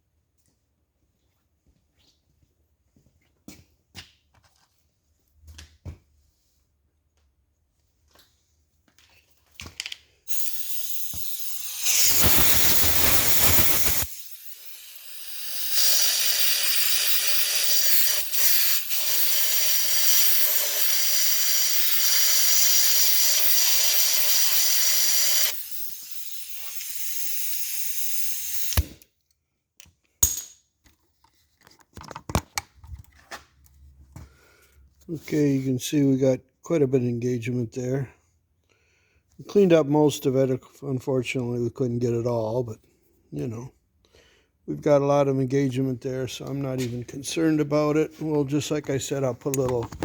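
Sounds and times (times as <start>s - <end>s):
compressed air hissing: 10.3s - 29.0s
clicks: 49.4s - 50.0s.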